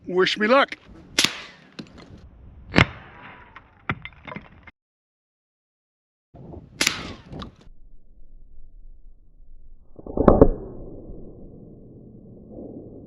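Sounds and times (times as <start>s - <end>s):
suppressed pistol shots: 1.2s - 1.8s, 6.8s - 7.5s.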